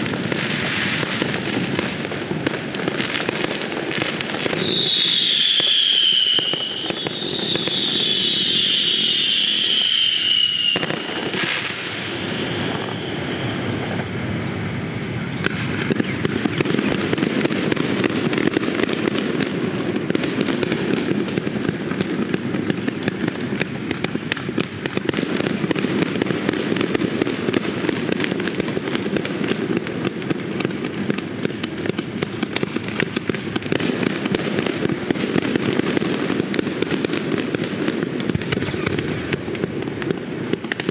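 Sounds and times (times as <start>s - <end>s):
fireworks crackling and popping: 0.0s - 40.9s
whistling firework shell: 3.2s - 19.0s, 37.0s - 40.9s
low rumble of bursts: 11.8s - 16.3s.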